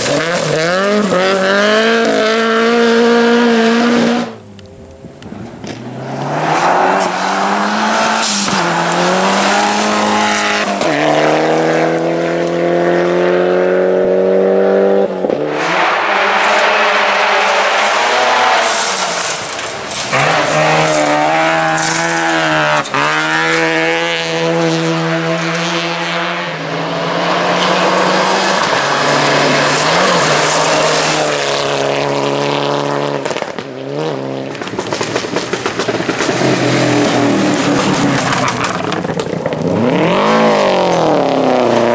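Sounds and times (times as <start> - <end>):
rally car engine revving: 0.0 - 41.9.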